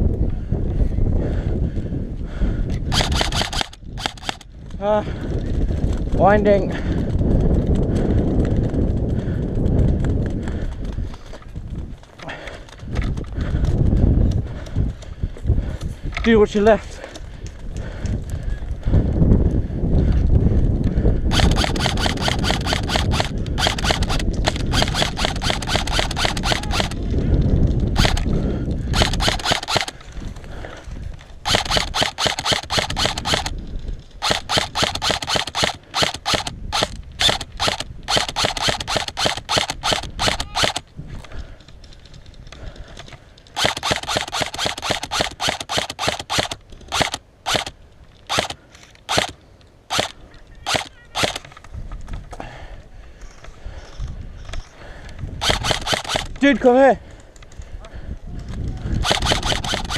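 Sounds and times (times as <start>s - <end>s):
airsoft rifles firing bursts: 2.9s - 4.5s, 21.3s - 27.0s, 27.9s - 30.0s, 31.4s - 33.6s, 34.2s - 40.8s, 43.5s - 51.5s, 55.4s - 56.6s, 59.0s - 59.9s.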